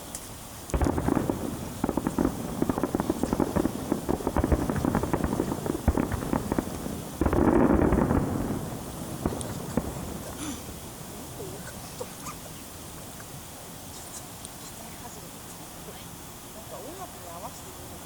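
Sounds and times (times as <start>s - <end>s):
fireworks cracking and popping: 0.0s - 13.4s.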